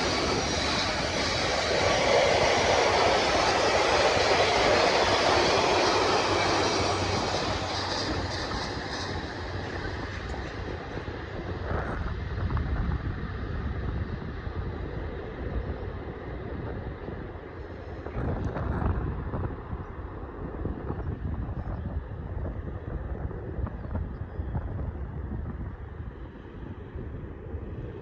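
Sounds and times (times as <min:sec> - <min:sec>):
train rumbling past: 0:00.0 - 0:12.5.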